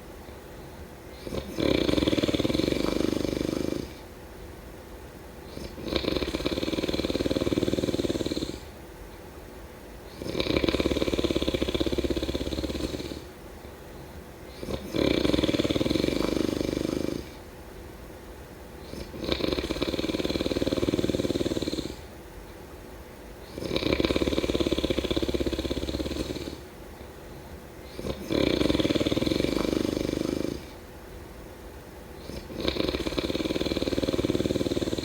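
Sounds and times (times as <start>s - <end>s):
quiet breathing: 0.0s - 4.2s, 10.0s - 17.5s, 23.3s - 31.2s, 32.1s - 35.0s
person snoring: 1.1s - 4.0s, 5.5s - 8.7s, 10.1s - 13.3s, 14.5s - 17.4s, 18.8s - 22.1s, 23.5s - 26.6s, 27.8s - 30.8s, 32.2s - 35.0s.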